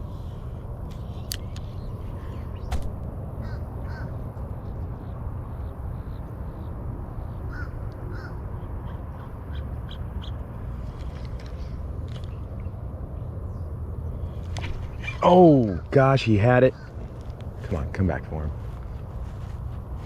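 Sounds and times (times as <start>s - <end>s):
low background noise: 0.0s - 20.0s
crow cawing: 3.4s - 4.2s, 7.5s - 8.4s, 16.7s - 17.0s.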